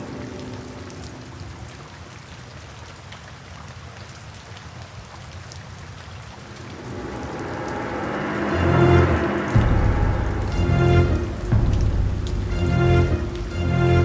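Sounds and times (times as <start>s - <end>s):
raindrops ticking: 0.0s - 14.0s
steady rain falling: 0.0s - 14.0s
faint music: 6.6s - 14.0s.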